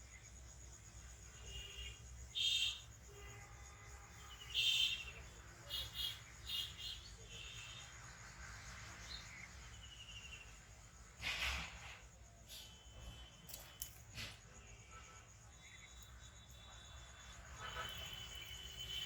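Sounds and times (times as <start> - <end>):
faint insect drone: 0.0 - 19.0.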